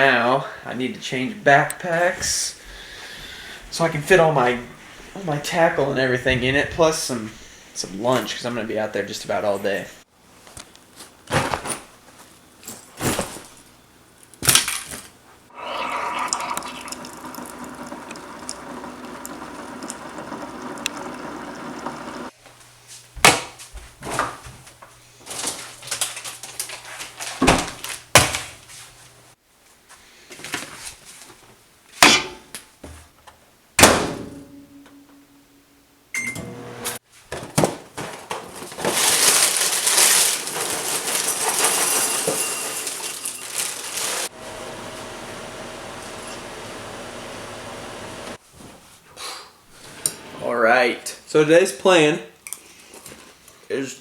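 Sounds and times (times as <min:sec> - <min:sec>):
objects knocking and clattering: 0:40.4 - 0:43.8.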